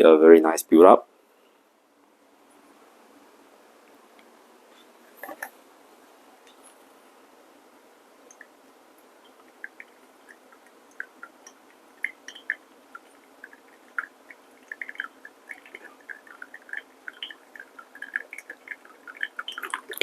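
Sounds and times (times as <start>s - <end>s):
coffee dripping plinks: 9.2s - 20.0s.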